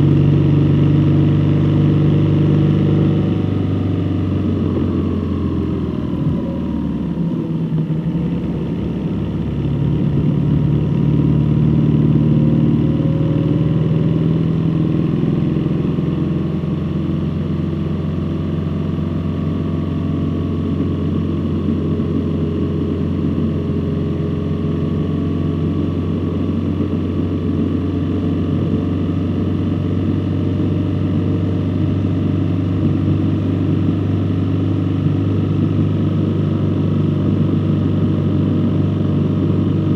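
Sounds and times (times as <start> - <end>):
road noise: 0.0 - 39.9
vehicle engine driving: 0.0 - 39.9.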